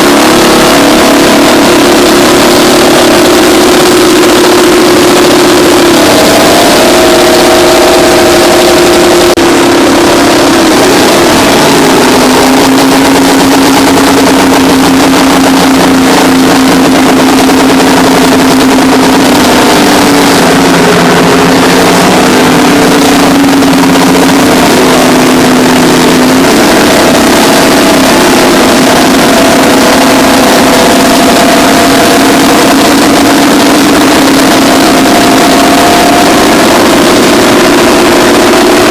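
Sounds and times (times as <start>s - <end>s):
bulldozer diesel engines running: 0.0s - 38.9s.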